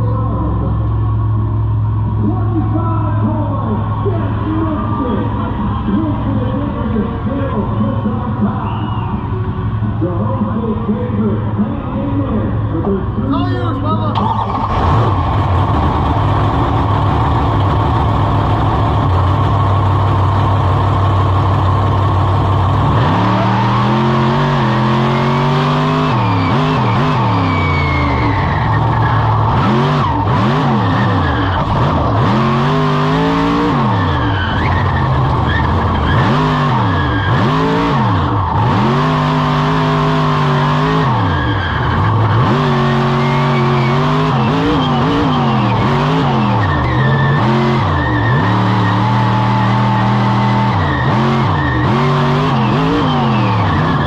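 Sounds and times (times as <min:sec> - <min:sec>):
monster truck engine revving: 0:00.0 - 0:54.0.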